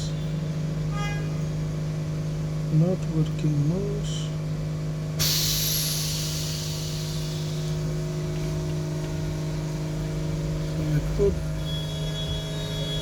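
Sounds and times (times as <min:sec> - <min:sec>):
low mechanical hum: 0:00.0 - 0:13.0
sudden hiss: 0:05.2 - 0:07.8.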